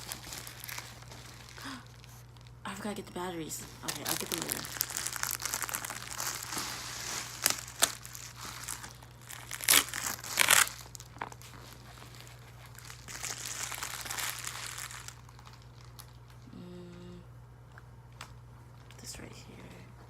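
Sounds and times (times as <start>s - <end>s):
packaging crinkling and rustling: 0.0s - 16.4s.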